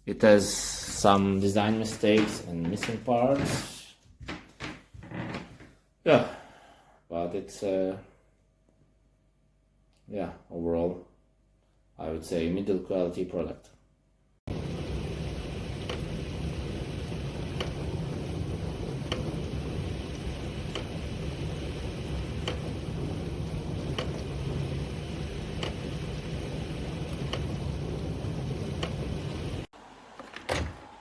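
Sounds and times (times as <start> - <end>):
water spraying: 14.5 - 29.7
dishwasher hum: 14.5 - 31.0.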